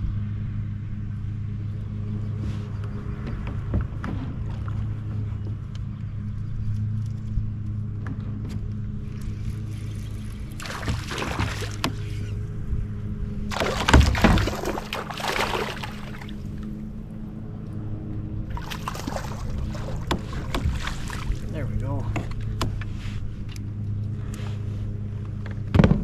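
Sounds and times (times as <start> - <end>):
steady low hum: 0.0 - 25.8
water sloshing against kayak: 9.2 - 12.4, 13.5 - 17.2, 18.4 - 23.0
heavy knock on hull: 13.5 - 16.4.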